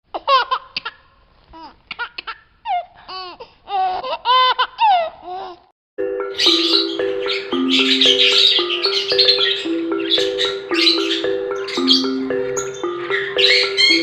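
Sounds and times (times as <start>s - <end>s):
baby laughing and babbling: 1.6s - 5.7s
music: 6.0s - 14.0s.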